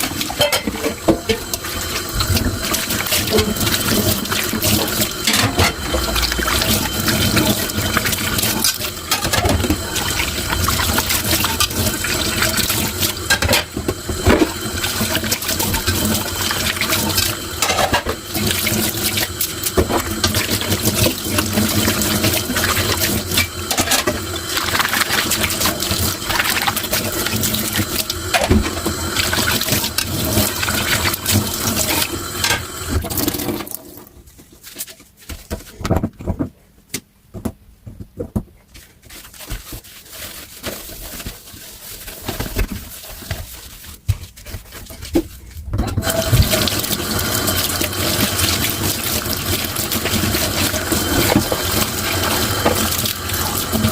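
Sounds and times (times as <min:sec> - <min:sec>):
tap water running into sink: 0:00.0 - 0:34.0, 0:45.9 - 0:53.9
dishes knocking and clinking: 0:00.4 - 0:01.5, 0:05.2 - 0:06.5.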